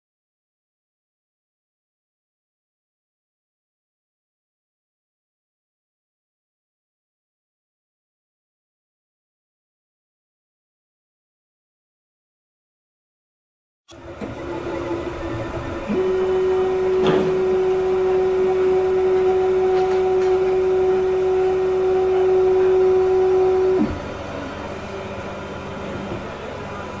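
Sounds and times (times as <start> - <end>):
printer motors whining: 13.9 - 27.0
printer running noise: 13.9 - 27.0
printer click: 17.0 - 17.5.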